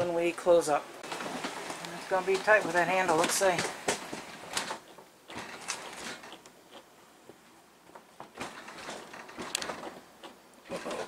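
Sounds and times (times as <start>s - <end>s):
light scraping: 1.0s - 6.9s
knocks and clicks: 7.9s - 11.0s.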